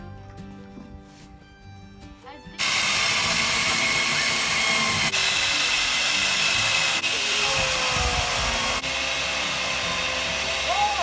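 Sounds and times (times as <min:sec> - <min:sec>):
power saw cutting wood: 0:02.6 - 0:11.0.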